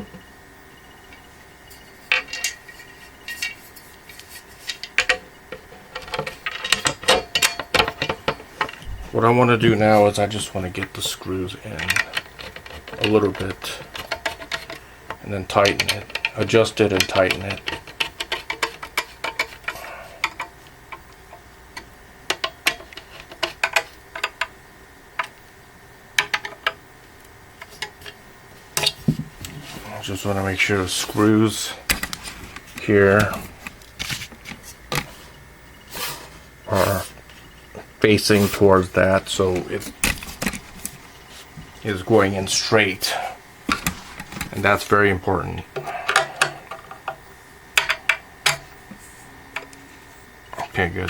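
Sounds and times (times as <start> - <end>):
metal screws clinking: 2.1 - 3.9.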